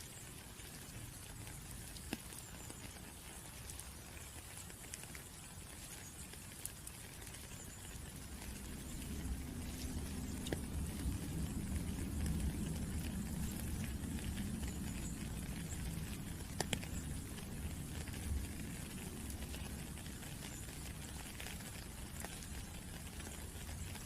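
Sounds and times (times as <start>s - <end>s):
rain falling: 0.0s - 24.0s
low rumble: 8.1s - 19.8s.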